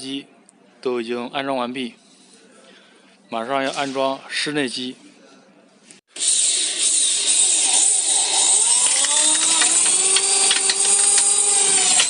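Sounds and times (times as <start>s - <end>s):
electric drill whining: 6.2s - 12.0s.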